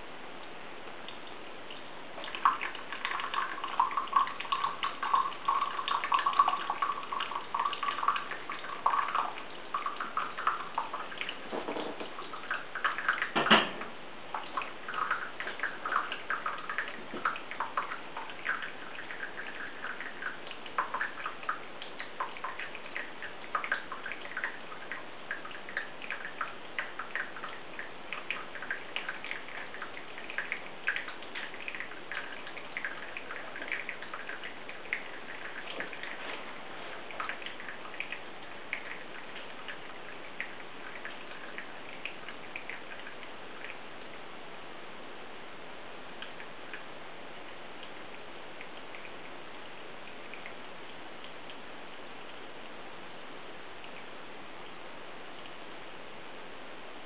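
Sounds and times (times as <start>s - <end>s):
coffee dripping: 0.0s - 44.2s, 46.1s - 55.6s
water trickling into coffee filter: 0.0s - 44.3s, 46.1s - 55.6s
knock: 11.5s - 12.1s, 13.4s - 13.9s.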